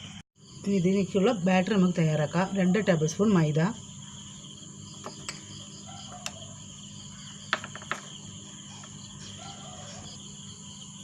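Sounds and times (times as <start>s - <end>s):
crickets chirring: 0.0s - 11.0s.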